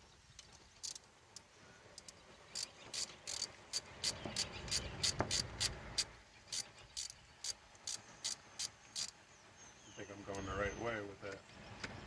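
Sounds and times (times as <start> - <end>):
socket ratchet clicking: 2.6 - 6.1.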